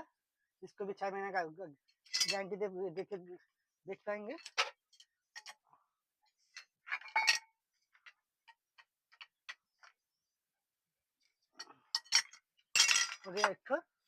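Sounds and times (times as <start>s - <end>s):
metal tools clinking: 2.0s - 2.4s, 6.5s - 7.5s, 11.9s - 13.6s.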